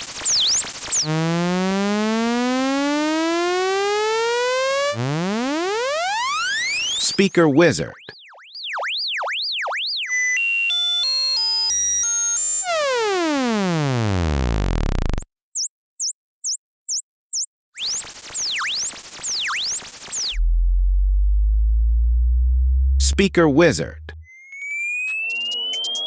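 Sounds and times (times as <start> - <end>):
high-pitched chirps: 0.0 - 1.3, 4.3 - 12.6, 15.2 - 20.4, 24.2 - 26.0
buzzy tone falling in pitch: 0.0 - 7.6, 9.6 - 15.2, 24.3 - 26.0
beeping tones jumping in pitch: 0.0 - 20.4, 24.2 - 26.0.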